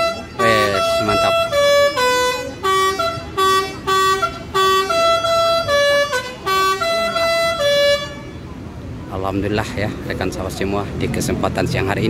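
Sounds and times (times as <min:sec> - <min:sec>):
multi-tone air horn melody: 0:00.0 - 0:08.5.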